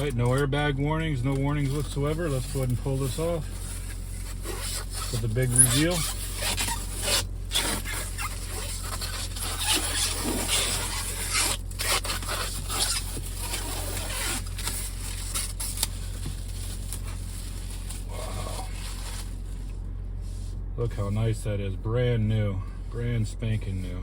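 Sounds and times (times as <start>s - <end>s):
low electrical hum: 0.0s - 24.0s
plastic cover rustling and scraping: 1.2s - 20.6s.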